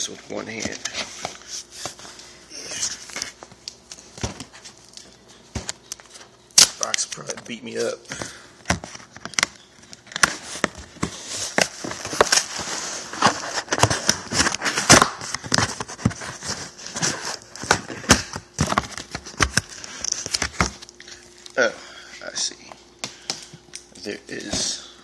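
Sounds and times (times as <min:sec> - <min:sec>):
cardboard rustling: 0:08.7 - 0:20.8.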